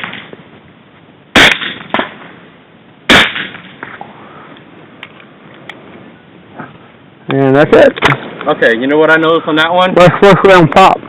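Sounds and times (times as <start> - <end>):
suppressed pistol shots: 1.4 - 2.2, 3.1 - 3.9.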